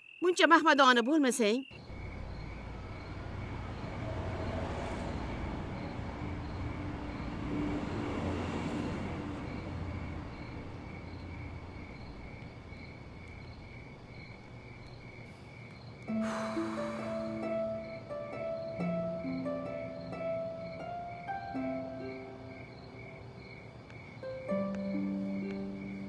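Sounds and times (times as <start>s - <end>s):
crickets chirping: 0.0s - 26.0s
plucked harp-like music: 17.4s - 22.5s.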